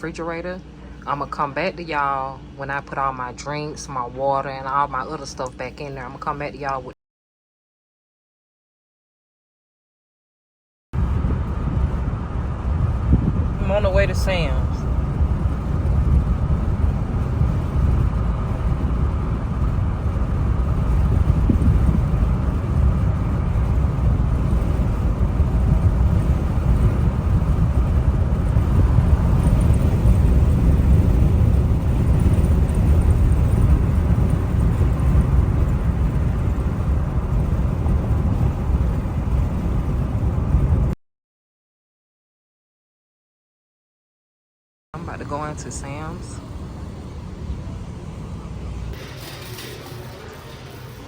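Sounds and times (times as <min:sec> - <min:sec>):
car road and engine rumble: 0:11.0 - 0:41.0, 0:45.0 - 0:51.0.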